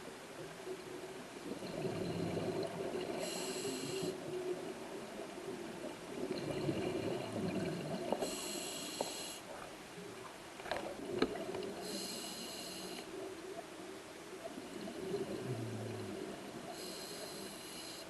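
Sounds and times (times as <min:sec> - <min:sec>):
exhaled bubbles gurgling: 0:01.0 - 0:08.6, 0:14.4 - 0:17.2
regulator breathing hiss: 0:03.2 - 0:04.2, 0:08.2 - 0:09.5, 0:11.8 - 0:13.1, 0:16.7 - 0:18.0.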